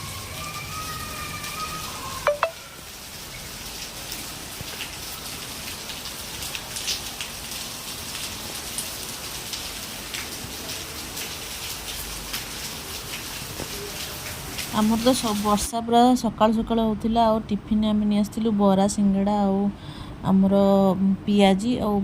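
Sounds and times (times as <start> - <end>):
steady rain falling: 0.0 - 15.8.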